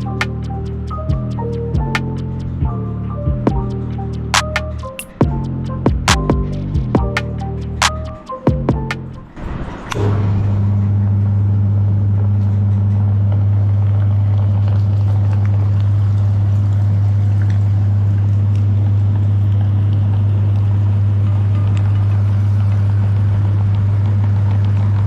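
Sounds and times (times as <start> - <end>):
meat grinder motor humming: 13.3 - 25.0.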